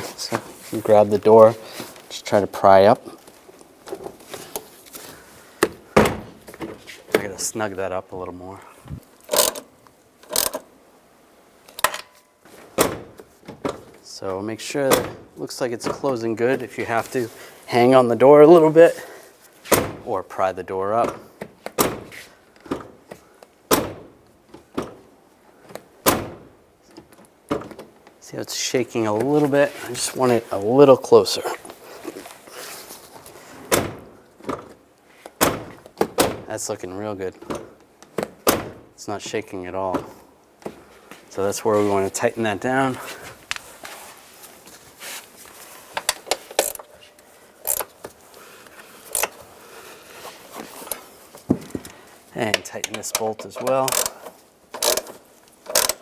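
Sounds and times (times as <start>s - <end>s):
truck door slamming: 5.6s - 6.8s, 14.9s - 16.0s, 19.7s - 20.1s, 26.0s - 26.5s, 38.2s - 38.9s
hand ratchet clicking: 9.3s - 10.7s, 46.4s - 46.9s, 47.6s - 47.9s, 49.1s - 49.4s, 53.0s - 56.0s.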